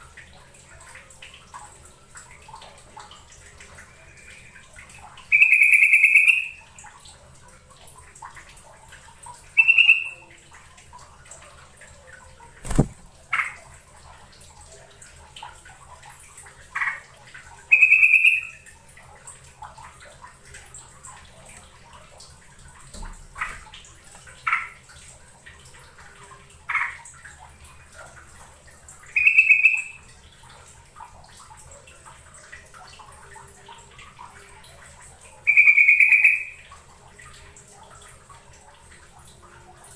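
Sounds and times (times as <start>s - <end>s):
bird whistled calls: 5.3s - 6.6s, 9.6s - 10.2s, 17.7s - 18.6s, 35.5s - 36.6s
faint background hiss: 12.5s - 13.6s
sharp click: 12.6s - 13.0s.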